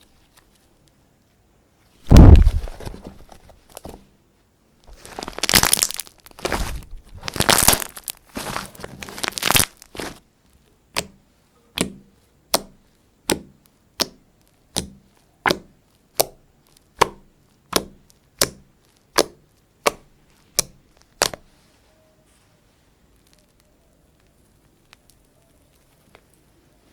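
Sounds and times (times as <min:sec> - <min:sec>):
slime crunchy squish: 0:02.0 - 0:03.1, 0:04.9 - 0:10.2, 0:11.8 - 0:21.6
slime sharp pops: 0:10.9 - 0:11.2, 0:11.8 - 0:21.5.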